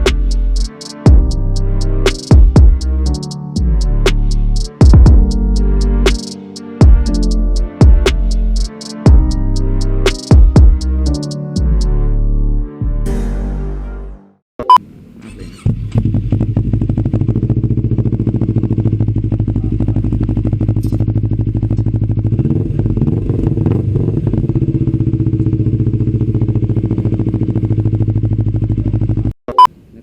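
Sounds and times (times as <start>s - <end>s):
motorcycle engine idling: 15.7s - 23.7s, 24.4s - 29.2s.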